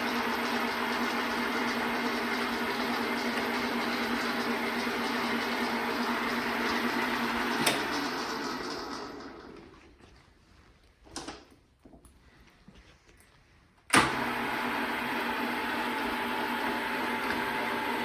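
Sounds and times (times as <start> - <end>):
metal lathe running: 0.0 - 9.7.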